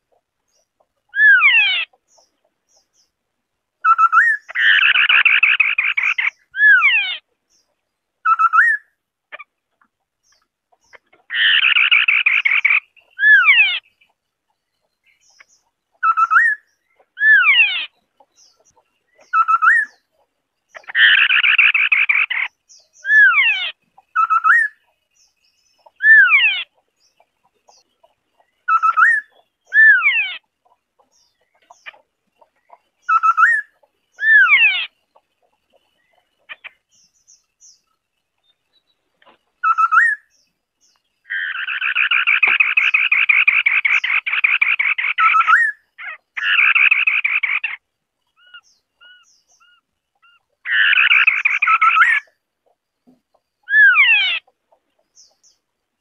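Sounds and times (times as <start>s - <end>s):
bird whistled phrases: 39.6s - 40.3s.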